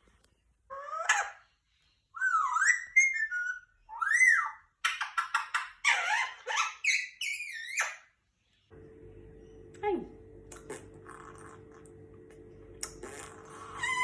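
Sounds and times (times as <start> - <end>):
parakeet harsh squawks: 4.0 - 8.1, 13.0 - 14.0
parakeet whistled calls: 13.5 - 14.0.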